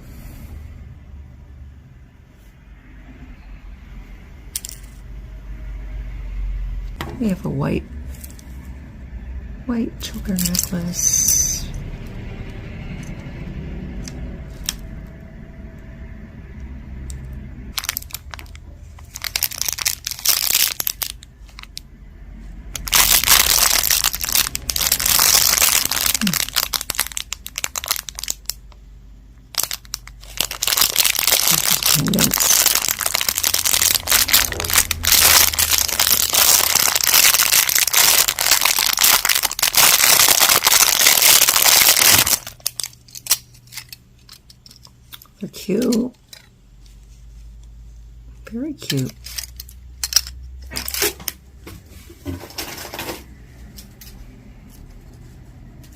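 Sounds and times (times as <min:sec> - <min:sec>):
packaging crinkling: 0:10.4 - 0:11.4, 0:17.7 - 0:21.8, 0:22.8 - 0:28.8, 0:29.4 - 0:45.2.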